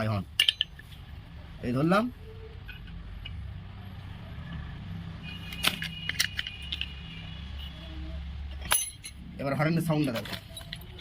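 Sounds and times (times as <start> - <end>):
metallic tool clinking on car horn: 5.2 - 7.7, 8.6 - 9.2.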